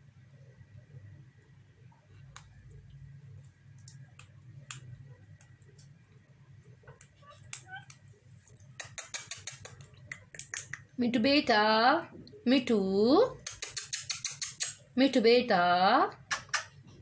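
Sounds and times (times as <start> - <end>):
parrot soft squeaks: 7.2 - 7.9
parrot beak clicks and taps: 8.7 - 10.9, 13.4 - 14.8, 16.3 - 16.7.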